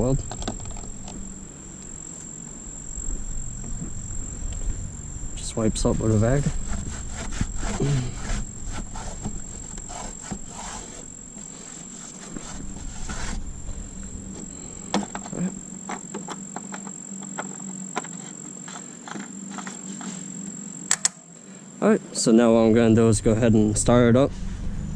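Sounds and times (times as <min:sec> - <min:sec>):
low background rumble: 0:00.0 - 0:11.4, 0:12.5 - 0:15.9, 0:22.6 - 0:24.9.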